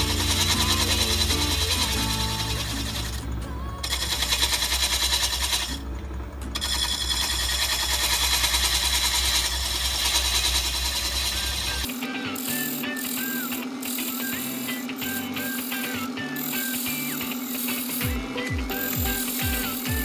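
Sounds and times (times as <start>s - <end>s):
gouge scraping spinning wood: 0.0s - 5.9s, 6.6s - 11.9s
lathe humming: 0.0s - 20.0s.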